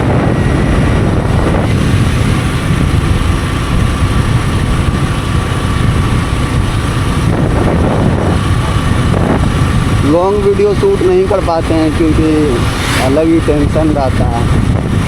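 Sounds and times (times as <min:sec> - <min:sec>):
motorcycle engine running: 0:00.0 - 0:15.0
wind and road rush: 0:00.0 - 0:15.0.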